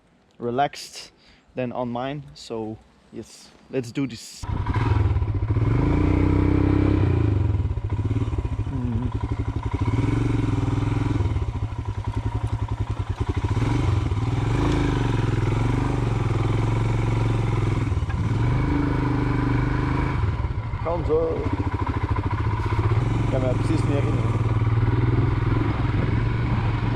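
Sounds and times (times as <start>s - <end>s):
motorcycle engine revving: 4.4s - 26.9s.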